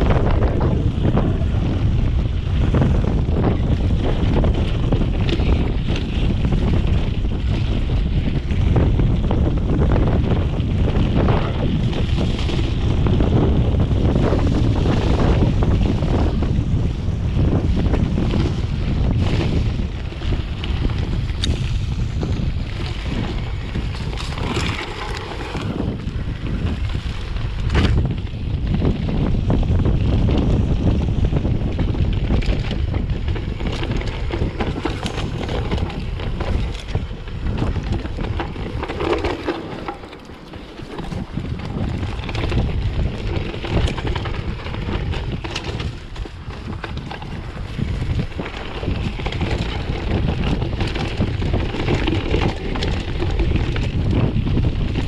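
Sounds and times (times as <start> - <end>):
bike knocking and rattling: 0.0 - 55.0
wind buffeting microphone: 0.0 - 55.0
tyre rumble on dirt: 17.3 - 55.0.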